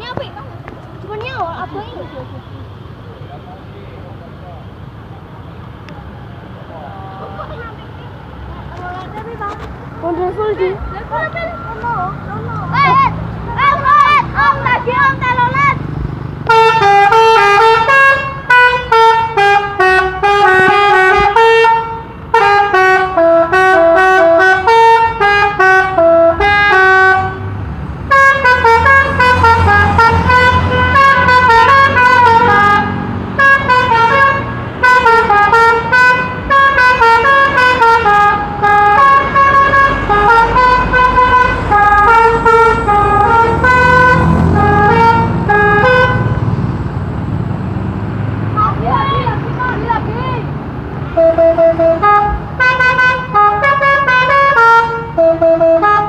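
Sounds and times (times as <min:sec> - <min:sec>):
musical air horn tune: 0:16.5 - 0:27.5, 0:28.1 - 0:46.4, 0:51.1 - 0:56.0.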